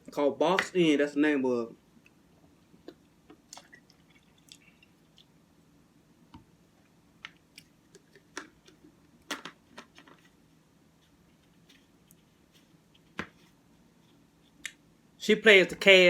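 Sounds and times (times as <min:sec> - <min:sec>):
chewing with wet clicks: 0:03.5 - 0:05.4.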